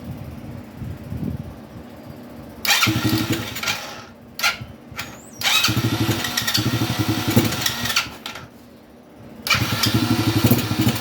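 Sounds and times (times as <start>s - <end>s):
engine cranking on electric starter: 2.6s - 8.5s, 9.4s - 11.0s.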